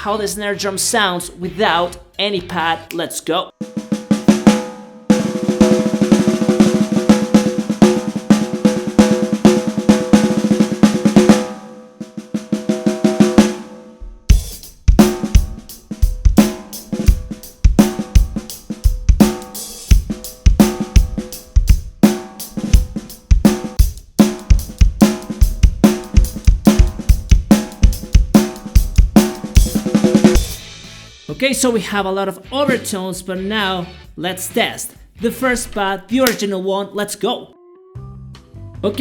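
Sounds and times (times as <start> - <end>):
drum kit beat: 0.0 - 36.6
bass drum kicks: 14.0 - 31.1
snare drum rolls: 14.9 - 31.0.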